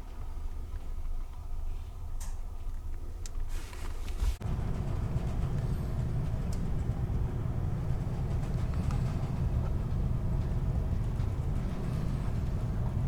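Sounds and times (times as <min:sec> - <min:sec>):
ship engine rumble: 0:04.4 - 0:13.0.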